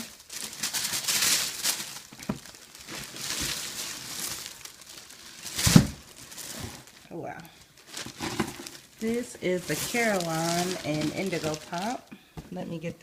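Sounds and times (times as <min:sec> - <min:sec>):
plastic packaging crinkling: 0:00.0 - 0:12.1.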